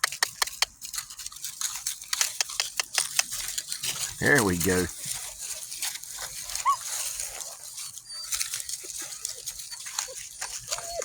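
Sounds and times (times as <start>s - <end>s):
dry leaves crackling: 0.2s - 11.0s
puppies whining: 6.4s - 11.0s.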